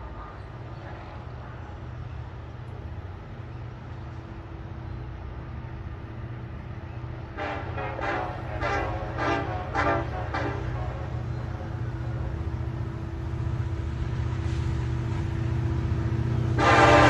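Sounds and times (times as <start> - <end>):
diesel locomotive rumbling: 0.0 - 17.0
train air horn short blasts: 7.4 - 11.1, 16.5 - 17.0.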